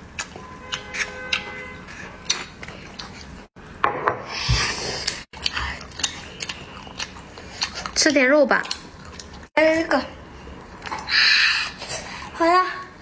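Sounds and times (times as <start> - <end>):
candy being chewed: 5.0 - 9.5.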